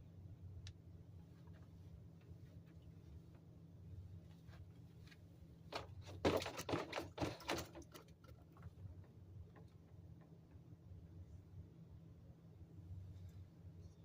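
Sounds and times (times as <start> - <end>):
steady low exhaust vent drone: 0.0 - 6.1, 8.1 - 14.0
rustling clattering knocks: 5.7 - 10.4.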